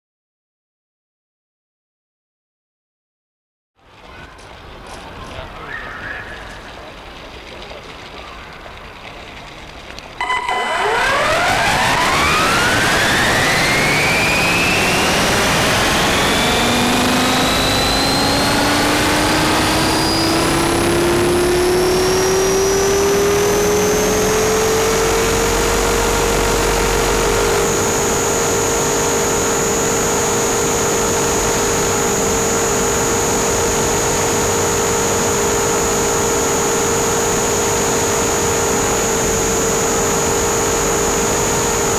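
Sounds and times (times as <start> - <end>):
helicopter rotor spinning: 10.2 - 41.9
model helicopter motor whine: 10.2 - 41.9.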